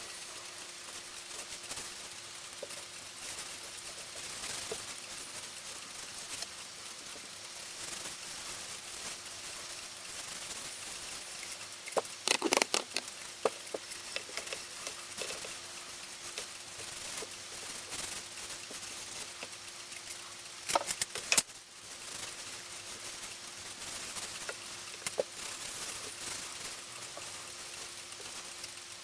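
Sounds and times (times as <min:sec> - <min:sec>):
scrubbing metal clock parts: 0:11.4 - 0:18.1
clicks and knocks of handling: 0:11.8 - 0:15.6, 0:20.7 - 0:21.5.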